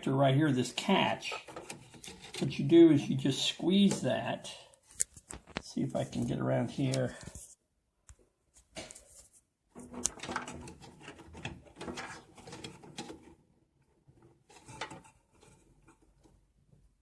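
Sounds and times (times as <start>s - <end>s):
rustling wires: 0.7s - 17.0s
clicks and rattles of plastic: 1.3s - 2.6s, 4.8s - 5.7s, 9.7s - 16.8s.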